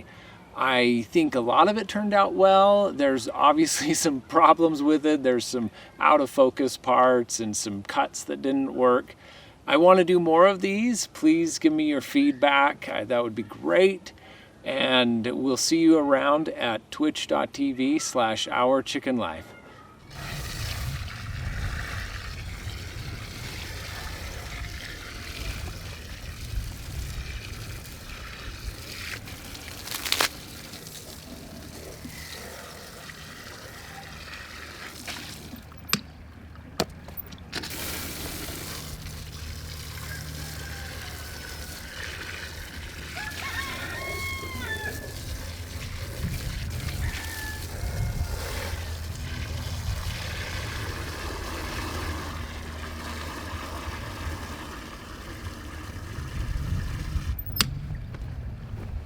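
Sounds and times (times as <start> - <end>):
rooster crowing: 40.0 - 41.8, 43.0 - 45.3, 46.9 - 48.5
steady low rumble: 45.1 - 59.0.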